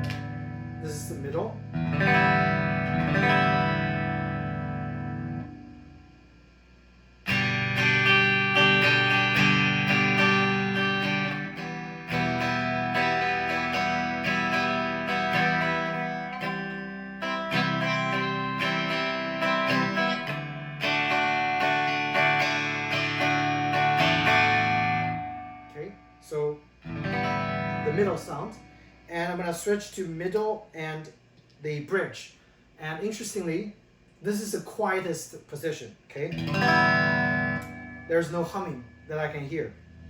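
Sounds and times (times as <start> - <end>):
electric guitar strummed chords: 0.0 - 6.1, 7.2 - 26.2, 26.8 - 28.9, 36.3 - 40.0.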